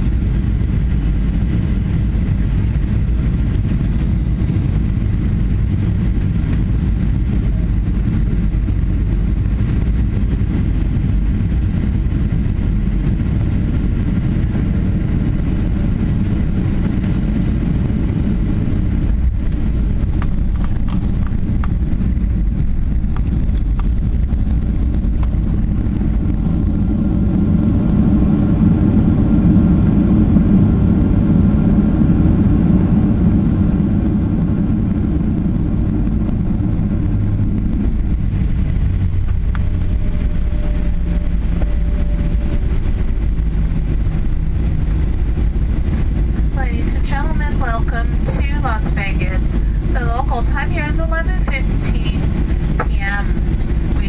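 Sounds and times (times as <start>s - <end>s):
airplane cabin engine rumble: 0.0s - 54.0s.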